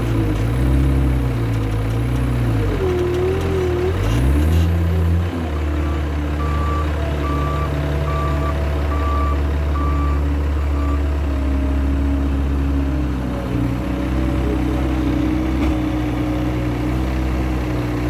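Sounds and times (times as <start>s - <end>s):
diesel engine drone: 0.0s - 18.0s
reversing alarm beeps: 5.9s - 11.0s.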